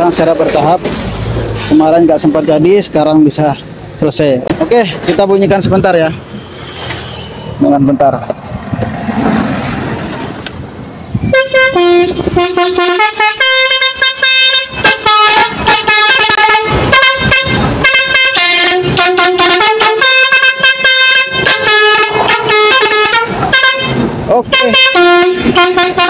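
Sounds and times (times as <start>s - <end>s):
truck air horn playing a tune: 11.3s - 26.0s.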